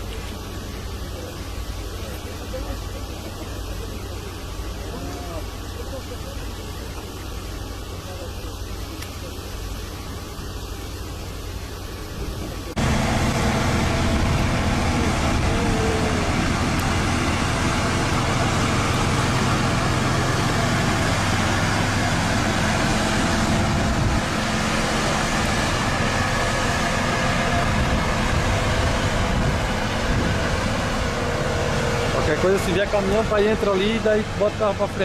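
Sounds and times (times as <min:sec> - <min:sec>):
vehicle engine running: 0:10.6 - 0:35.0.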